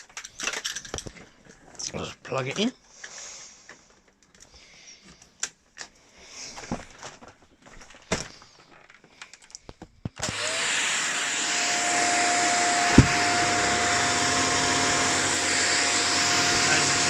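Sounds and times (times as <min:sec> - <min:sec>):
vacuum cleaner running: 0:10.2 - 0:17.0
thump: 0:12.9 - 0:13.3.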